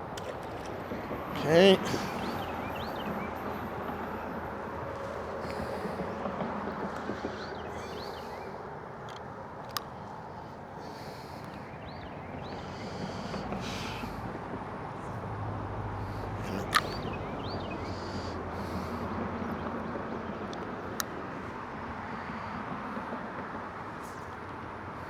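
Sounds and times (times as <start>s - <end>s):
cars passing on road: 0.0s - 25.0s
faint bird chirps: 16.2s - 20.4s.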